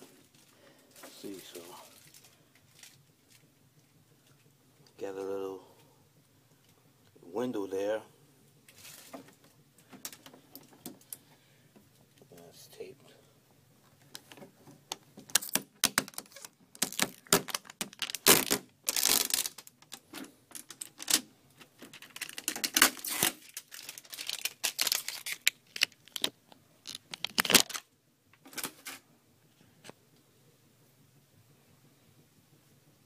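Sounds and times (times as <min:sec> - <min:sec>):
plastic crackling and clicking: 0:01.9 - 0:03.5, 0:14.0 - 0:29.0
tape tearing off plastic: 0:15.2 - 0:27.9.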